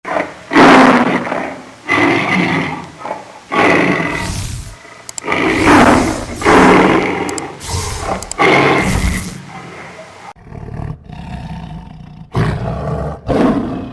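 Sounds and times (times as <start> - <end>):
large animal roaring: 3.5 - 9.5, 10.4 - 13.9.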